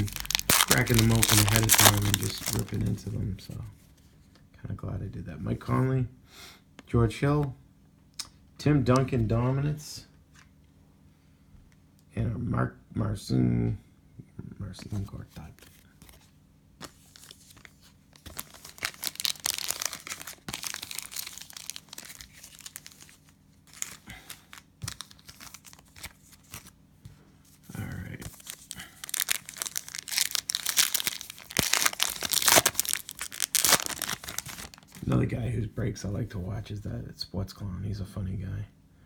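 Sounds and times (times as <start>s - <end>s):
cellophane wrapper crinkling: 0.0s - 3.0s, 16.8s - 26.8s, 28.2s - 35.1s.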